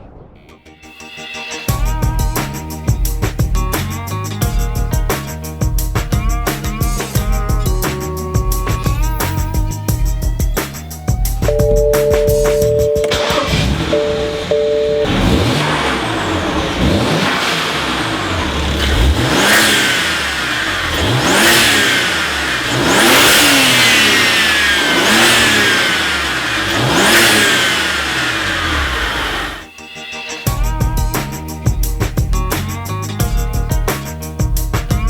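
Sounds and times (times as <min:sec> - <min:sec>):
turbo whine: 0:11.4 - 0:29.7
car engine revving: 0:11.5 - 0:29.7.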